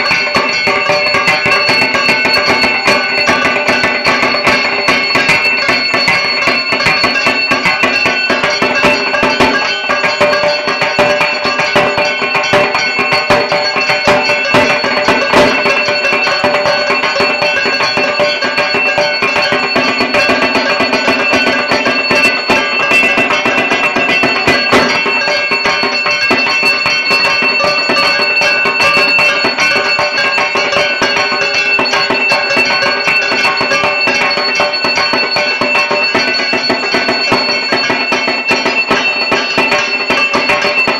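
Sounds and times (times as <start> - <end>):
drums in fast rhythm: 0.0 - 40.9
high ringing tones: 0.0 - 40.9.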